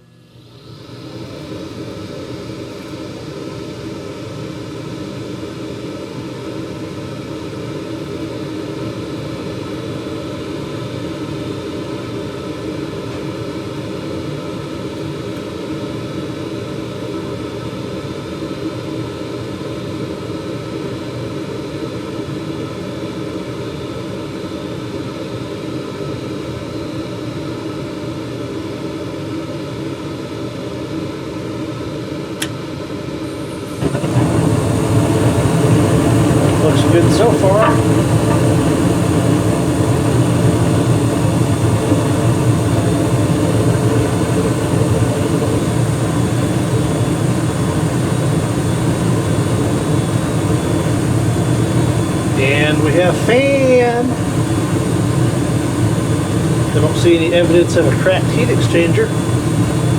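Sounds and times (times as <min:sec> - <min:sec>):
furnace fan humming: 0:29.8 - 0:59.9.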